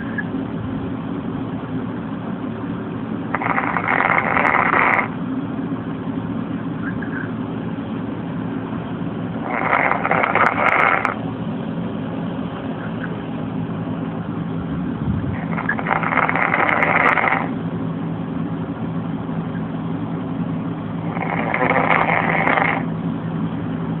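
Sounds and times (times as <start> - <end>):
steady low hum: 0.0 - 24.0
man snoring: 9.5 - 11.2, 21.1 - 22.8.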